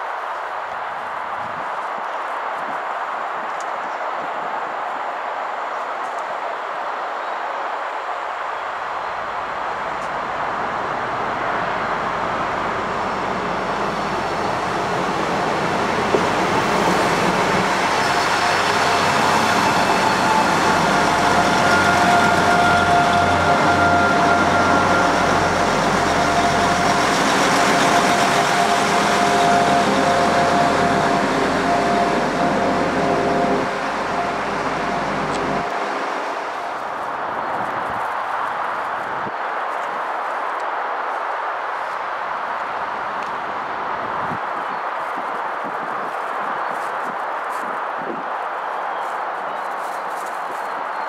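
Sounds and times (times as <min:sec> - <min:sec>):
train passing: 0:00.0 - 0:44.7
steady whine: 0:09.0 - 0:38.0.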